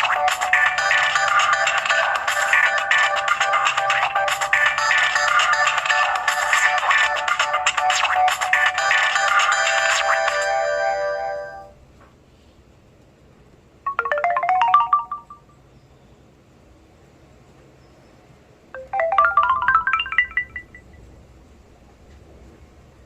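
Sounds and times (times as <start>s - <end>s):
phone ringtone: 0.0s - 11.7s, 13.9s - 15.5s, 18.8s - 21.0s
bright rising chiming notes: 13.9s - 15.5s, 18.8s - 20.8s.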